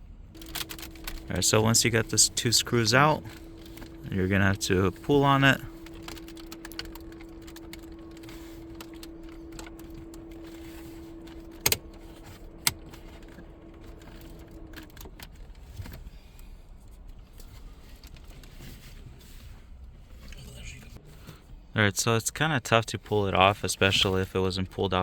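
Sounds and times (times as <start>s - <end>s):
steady hum: 0.0s - 18.1s
plastic trim clicks and rattles: 11.2s - 15.9s.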